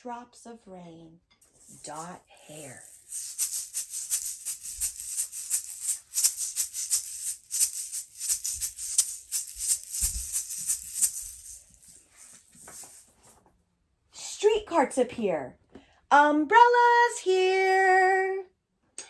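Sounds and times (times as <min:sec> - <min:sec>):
hand shakers shaken: 0:01.5 - 0:13.3.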